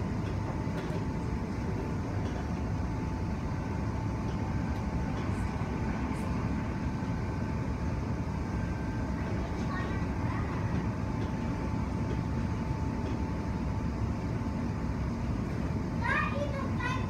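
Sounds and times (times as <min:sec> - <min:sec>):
train interior rumble: 0:00.0 - 0:17.0.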